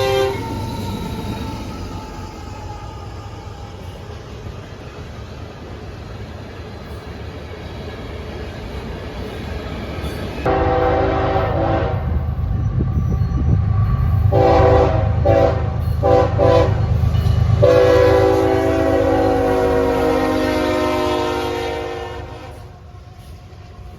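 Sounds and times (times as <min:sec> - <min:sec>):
train horn blasts: 0:00.0 - 0:01.1, 0:10.4 - 0:12.4, 0:14.2 - 0:22.7
train rumble: 0:00.0 - 0:23.9.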